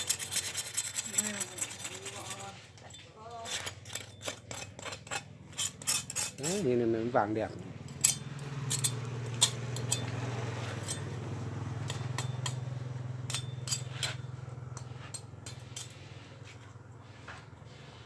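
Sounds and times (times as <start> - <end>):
metal utensils clinking: 0.0 - 6.6, 7.8 - 11.2, 13.2 - 16.0.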